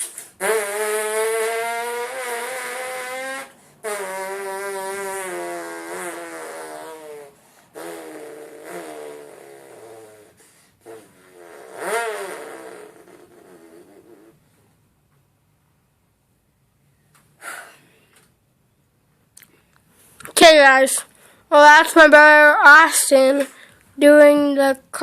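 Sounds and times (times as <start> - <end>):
person imitating car engine: 0.0 - 14.4.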